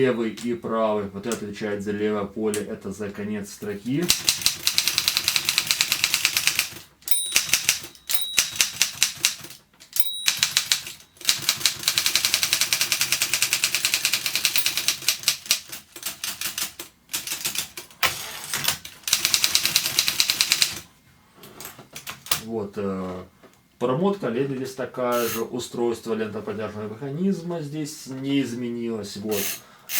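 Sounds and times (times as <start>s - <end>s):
typewriter carriage clicking: 4.0s - 20.8s
typewriter bell ringing: 4.2s - 12.6s, 14.3s - 15.0s.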